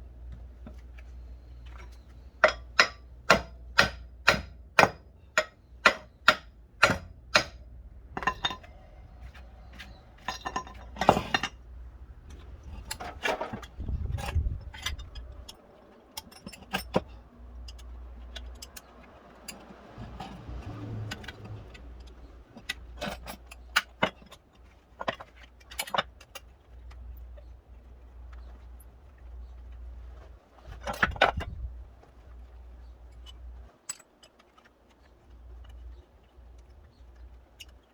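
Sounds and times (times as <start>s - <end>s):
metal tools clinking: 8.2s - 11.6s, 12.2s - 26.5s.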